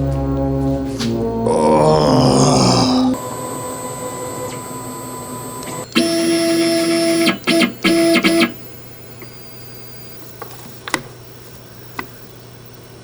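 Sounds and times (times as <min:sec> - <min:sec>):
stepper motors whining: 0:00.0 - 0:09.7.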